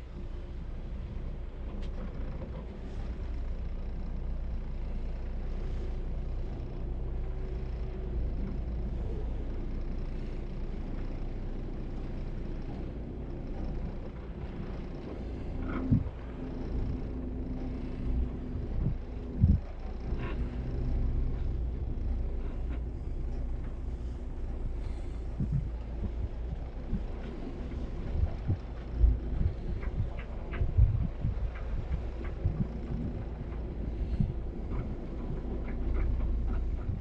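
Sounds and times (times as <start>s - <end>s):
boat diesel engines rumbling: 0.0s - 37.0s.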